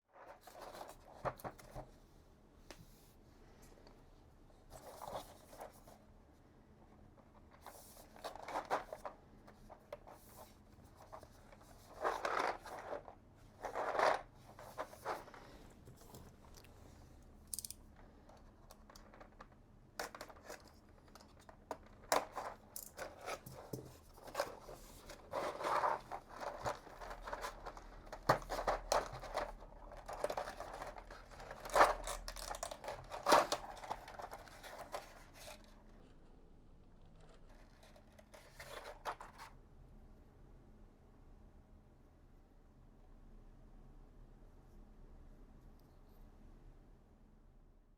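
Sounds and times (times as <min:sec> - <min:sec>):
packaging tearing and crinkling: 0:25.3 - 0:35.6.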